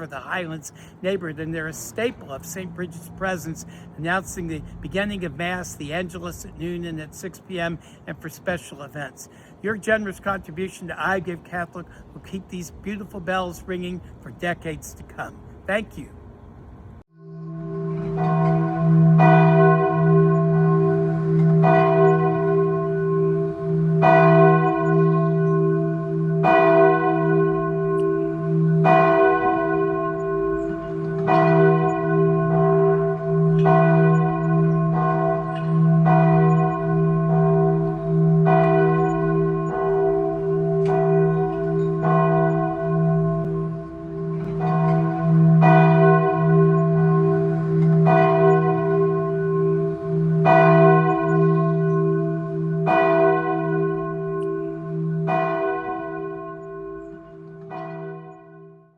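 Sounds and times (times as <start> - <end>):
church bell tolling: 17.2 - 58.9.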